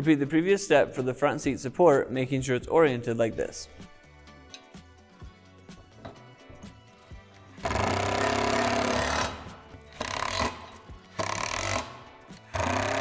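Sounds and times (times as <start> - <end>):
quiet background music: 0.0 - 13.0
cordless power driver running: 10.0 - 13.0.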